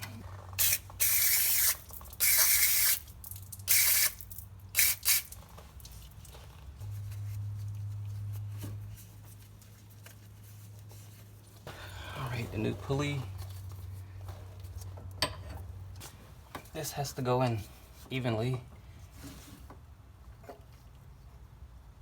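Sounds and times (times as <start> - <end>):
aerosol spray hissing: 0.6 - 3.0, 3.7 - 4.2.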